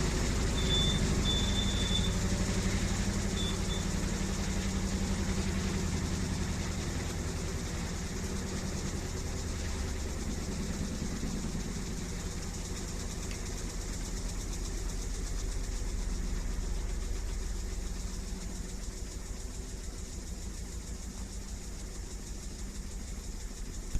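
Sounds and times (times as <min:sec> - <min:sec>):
washing machine drum hum: 0:00.0 - 0:23.9.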